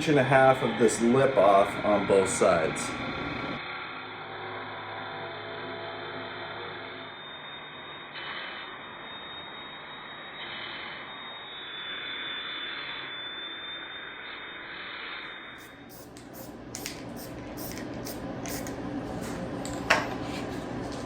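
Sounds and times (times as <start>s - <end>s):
power tool cutting steel: 15.2s - 18.8s.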